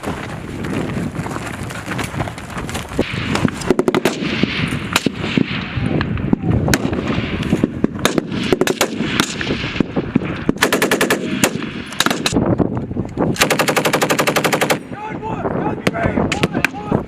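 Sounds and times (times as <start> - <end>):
machine guns firing: 3.0 - 5.6, 8.0 - 9.9, 10.5 - 12.4, 13.4 - 14.8.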